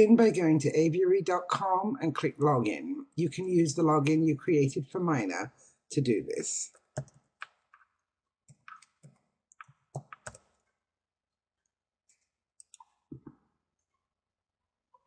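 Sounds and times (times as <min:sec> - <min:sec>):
computer keyboard clicks: 0:06.7 - 0:07.6, 0:08.5 - 0:10.6.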